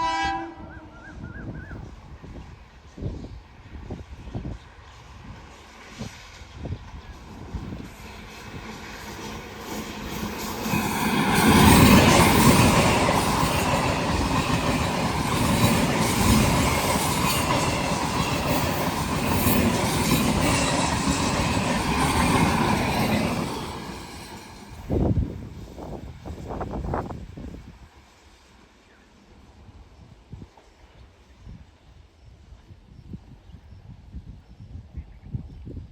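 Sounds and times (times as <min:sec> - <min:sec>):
train wheels rumbling on rails: 0:00.0 - 0:31.7
train wheel squeal: 0:00.6 - 0:02.3, 0:03.2 - 0:27.1.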